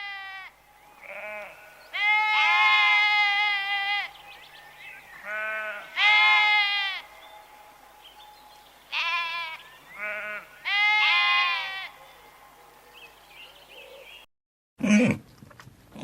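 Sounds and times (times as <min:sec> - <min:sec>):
animal bleating: 0:00.0 - 0:04.2, 0:05.2 - 0:07.1, 0:08.9 - 0:12.0.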